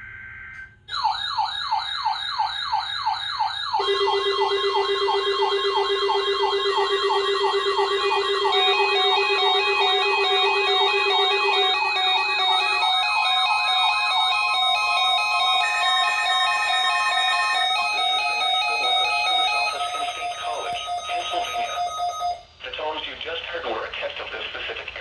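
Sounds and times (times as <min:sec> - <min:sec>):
falling yelp siren tone: 0:00.4 - 0:22.5
electronic beeping tones: 0:03.8 - 0:22.4.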